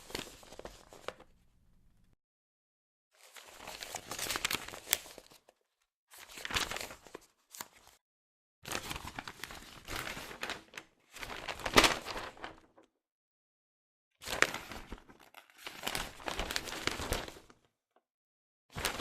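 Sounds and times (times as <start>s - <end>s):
newspaper pages rustling: 0.0s - 1.3s, 3.2s - 5.5s, 6.1s - 8.0s, 8.7s - 12.8s, 14.3s - 17.6s.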